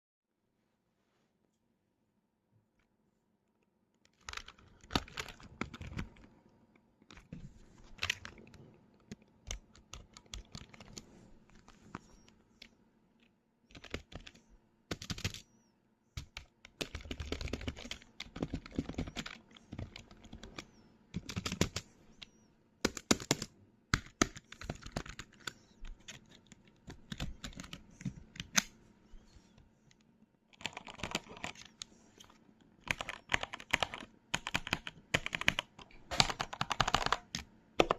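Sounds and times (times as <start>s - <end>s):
computer keyboard typing: 4.1s - 6.3s, 7.1s - 12.8s, 13.7s - 15.5s, 16.2s - 28.7s, 30.5s - 37.9s.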